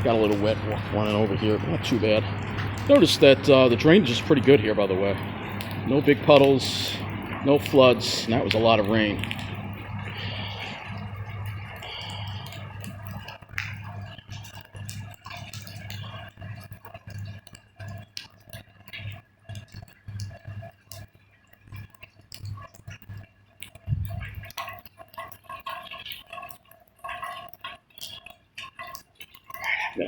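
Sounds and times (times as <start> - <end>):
low uneven hum: 0.0 - 18.2, 23.8 - 24.8
rainwater dripping: 0.0 - 30.0.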